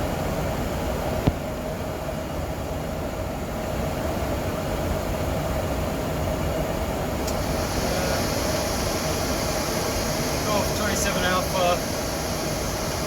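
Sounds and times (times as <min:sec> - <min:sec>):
airflow and air-conditioning rush: 0:00.0 - 0:13.0
steady hum: 0:07.0 - 0:13.0
bright hiss: 0:07.2 - 0:13.0.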